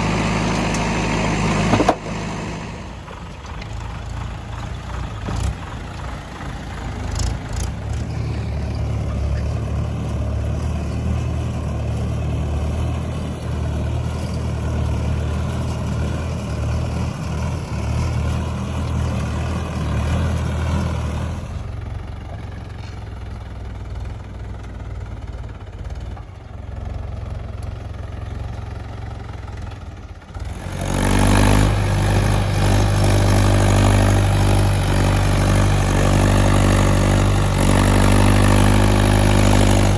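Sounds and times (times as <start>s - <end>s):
heavy diesel engines running: 0.0s - 39.9s.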